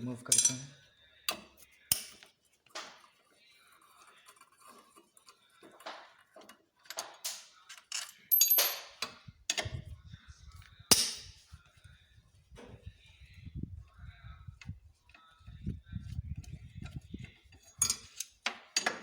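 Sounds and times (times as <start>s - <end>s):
tools and bolts clanking on metal: 0.2s - 3.0s, 4.4s - 9.8s, 16.8s - 19.0s.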